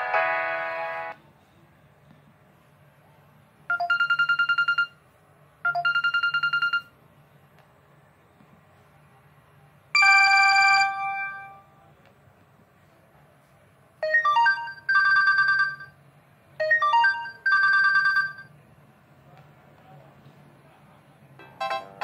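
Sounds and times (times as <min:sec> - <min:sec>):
electronic phone ringtone trill: 0:03.7 - 0:05.0, 0:05.7 - 0:06.9, 0:10.0 - 0:11.6, 0:16.6 - 0:18.5.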